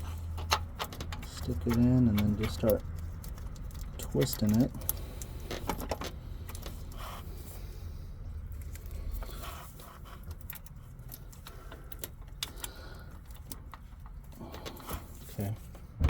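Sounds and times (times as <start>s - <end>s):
bolt scraping and clicking: 0.0s - 6.8s.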